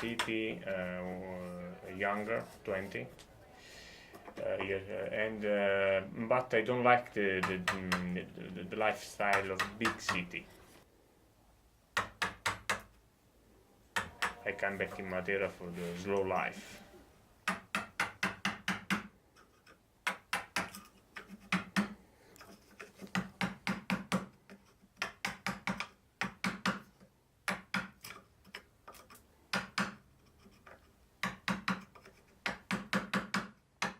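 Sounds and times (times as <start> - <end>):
hand tool knocking on wood: 0.0 - 0.4, 7.4 - 8.1, 9.3 - 10.3, 17.4 - 19.1, 20.0 - 20.8, 23.0 - 24.4, 25.0 - 28.1, 31.2 - 33.9.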